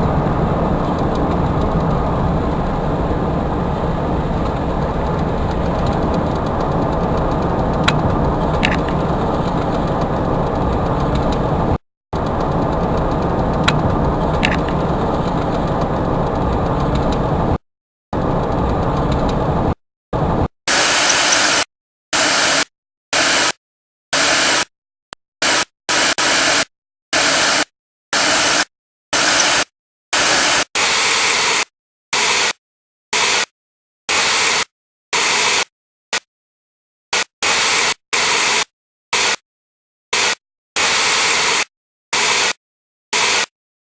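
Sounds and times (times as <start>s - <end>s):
vehicle road and engine noise: 0.0s - 17.6s, 18.2s - 21.5s.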